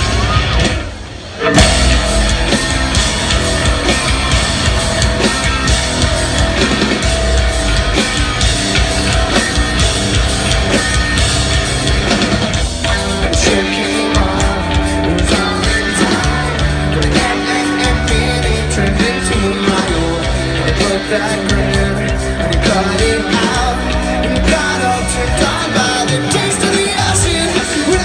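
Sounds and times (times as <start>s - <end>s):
distorted electric guitars: 0.0s - 28.0s
drums: 0.0s - 28.0s
singer shouting and singing: 11.9s - 28.0s.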